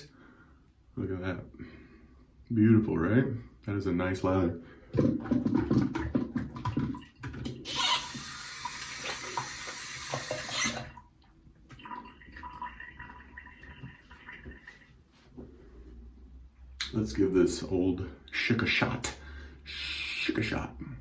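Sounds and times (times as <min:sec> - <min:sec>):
tap running into sink: 0:05.0 - 0:10.9.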